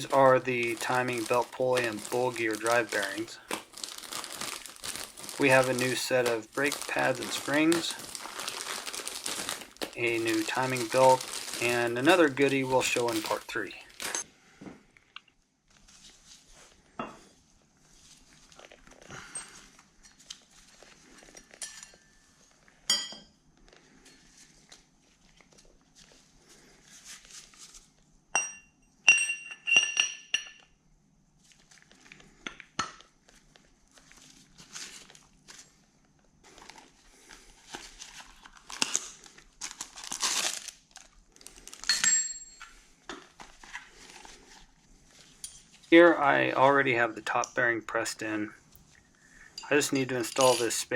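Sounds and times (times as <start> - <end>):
packaging crinkling: 0.0 - 14.2, 33.2 - 41.9, 43.2 - 45.9
metal parts clinking: 49.6 - 50.8.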